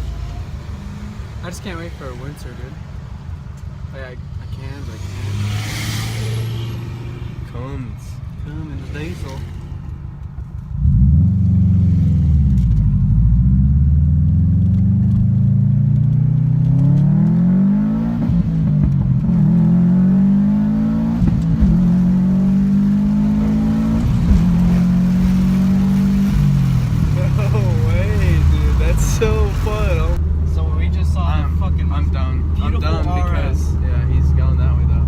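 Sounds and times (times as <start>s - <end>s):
car engine accelerating hard: 4.6s - 7.9s, 10.8s - 35.0s.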